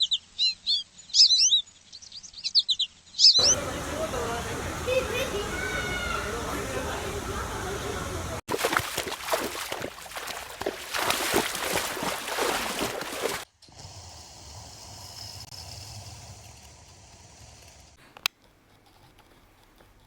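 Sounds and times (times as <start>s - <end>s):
water splashing: 3.4s - 13.4s.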